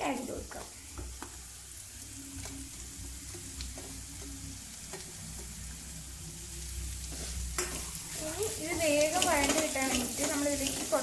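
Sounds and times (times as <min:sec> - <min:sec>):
onions sizzling in hot oil: 0:00.0 - 0:11.0
spatula scraping a pan: 0:07.1 - 0:11.0.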